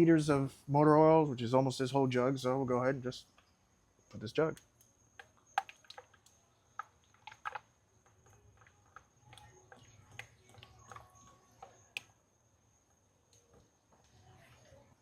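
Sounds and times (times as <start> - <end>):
oil glugging through a funnel: 5.2 - 12.1.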